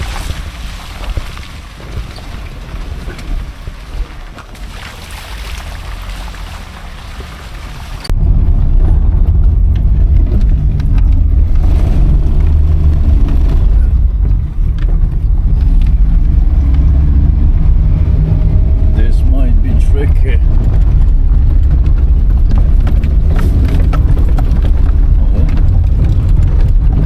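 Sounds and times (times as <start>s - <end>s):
low rumble of engine and road: 0.0s - 27.0s.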